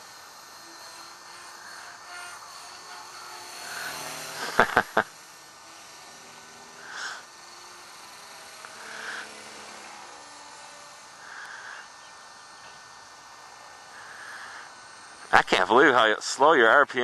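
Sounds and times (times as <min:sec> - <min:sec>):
distant model helicopter buzz: 0:00.0 - 0:17.0.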